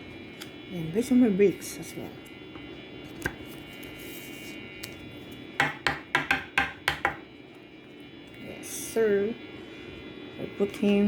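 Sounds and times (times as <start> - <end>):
sharp taps on hard surface: 5.6 - 7.2.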